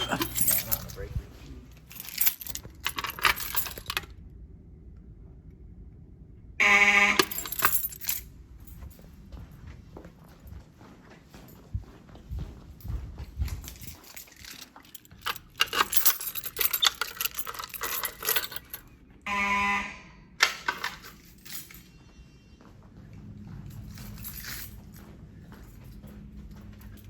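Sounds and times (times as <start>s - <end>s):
metallic jangling and clicking: 0.0s - 4.2s, 7.2s - 9.1s, 12.4s - 19.0s, 20.4s - 22.0s, 23.6s - 27.0s
fire alarm horn blast: 6.6s - 7.5s, 19.2s - 20.3s.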